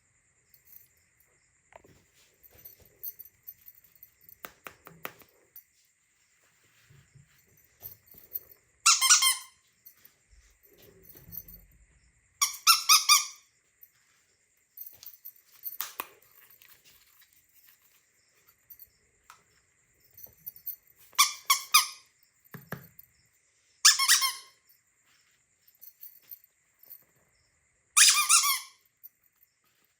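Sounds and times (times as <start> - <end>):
squeaky toy squeaks: 8.8 - 9.6, 12.4 - 13.4, 21.2 - 22.0, 23.8 - 24.6, 28.0 - 28.8
handling clicks: 15.0 - 16.6.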